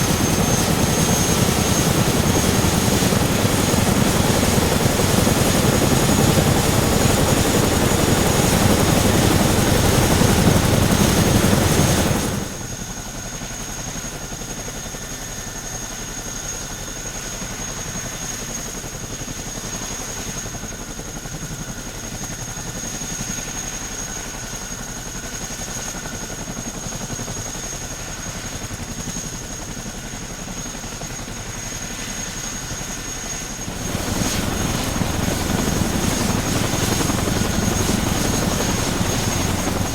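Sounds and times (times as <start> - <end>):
helicopter rotor beat: 0.0 - 39.9
high turbine whine: 33.6 - 39.9.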